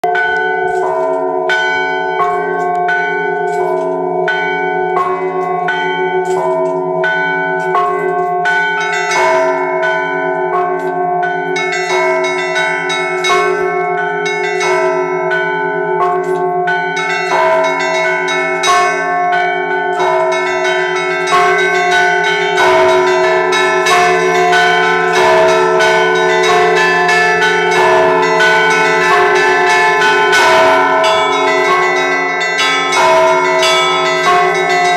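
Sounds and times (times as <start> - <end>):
large bell humming: 0.0 - 34.9
small bells ringing quickly: 16.2 - 34.9.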